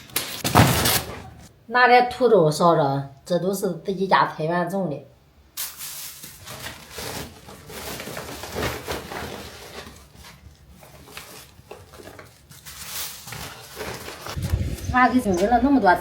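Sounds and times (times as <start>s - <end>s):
rustling of bags: 5.6s - 15.8s.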